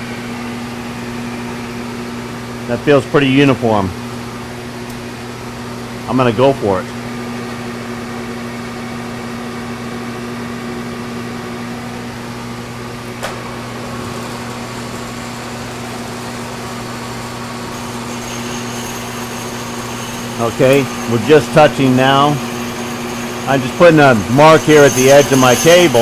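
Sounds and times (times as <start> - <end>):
phase converter humming: 0.0 - 26.0
milling machine running: 7.0 - 26.0
vacuum drawing air: 10.3 - 17.7.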